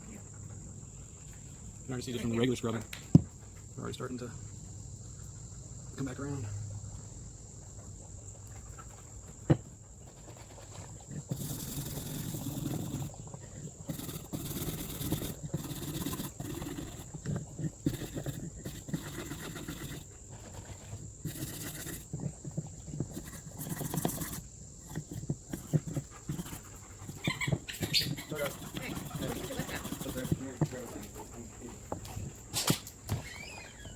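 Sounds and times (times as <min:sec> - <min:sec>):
sharp click: 0:32.5 - 0:33.0.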